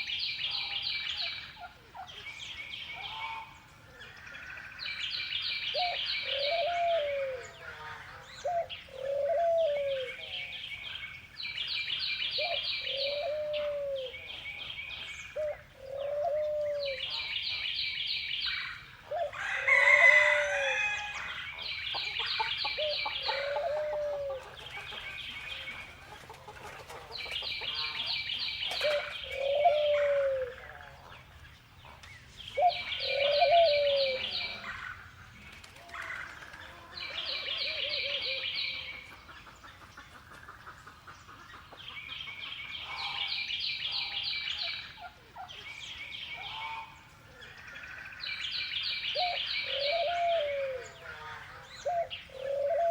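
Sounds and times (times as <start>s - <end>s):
low rising and falling bird calls: 32.6s - 35.1s, 51.7s - 52.9s.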